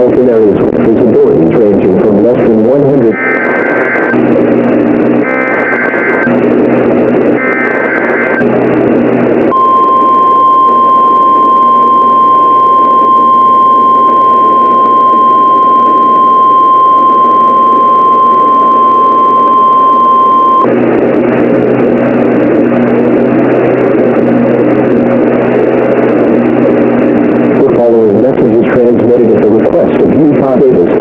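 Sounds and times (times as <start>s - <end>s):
radio static: 0.0s - 31.0s
steady high alert tone: 1.2s - 20.7s.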